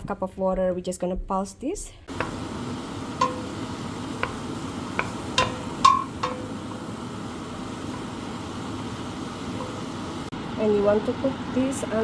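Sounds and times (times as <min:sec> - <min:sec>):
steady low hiss: 0:02.1 - 0:10.3
metal utensil knocking on pot: 0:03.1 - 0:06.6.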